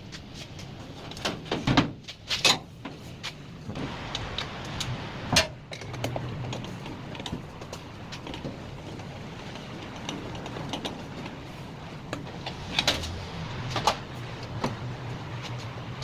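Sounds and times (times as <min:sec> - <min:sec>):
steady low hum: 0:03.4 - 0:16.0.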